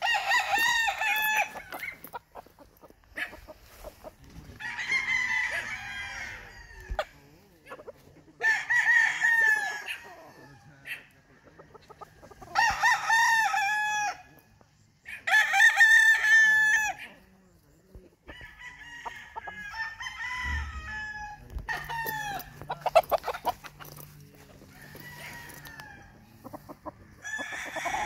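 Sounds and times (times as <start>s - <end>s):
roosters crowing: 0.0s - 17.2s, 18.3s - 28.0s
chicken clucks and calls: 0.0s - 28.0s.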